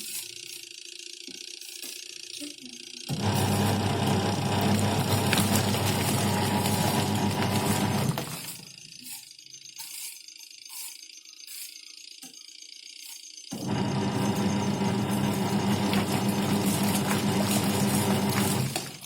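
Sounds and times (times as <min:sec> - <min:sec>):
washing machine motor humming: 0:03.1 - 0:08.6, 0:13.5 - 0:19.0.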